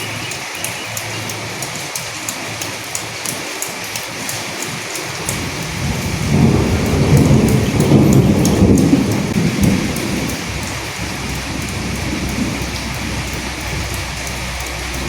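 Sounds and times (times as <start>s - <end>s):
rain on dead leaves: 0.0s - 15.0s
thunder rumble: 5.2s - 15.0s.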